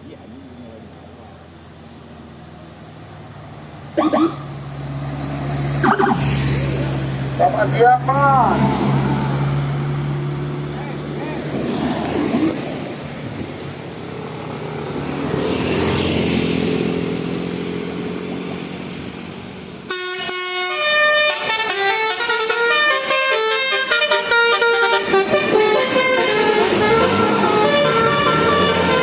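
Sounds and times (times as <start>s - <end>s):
road traffic noise: 0.0s - 29.0s
bus horn playing a tune: 19.9s - 29.0s.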